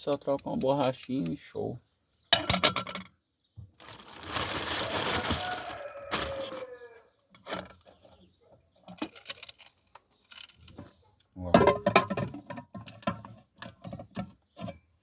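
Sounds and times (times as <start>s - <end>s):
metal parts clinking: 8.9s - 10.8s.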